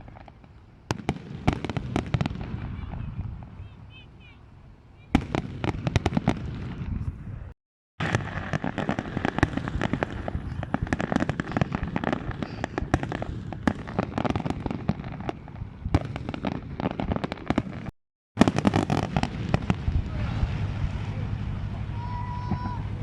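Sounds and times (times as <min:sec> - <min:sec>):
fireworks bangs and crackles: 0:00.0 - 0:04.0, 0:05.1 - 0:23.0
continuous rumble: 0:18.6 - 0:23.0.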